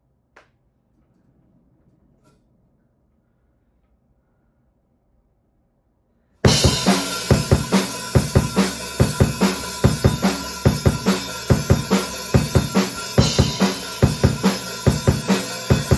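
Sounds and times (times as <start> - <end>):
acoustic drum kit groove: 6.4 - 15.9
ringing cymbals: 6.5 - 15.9.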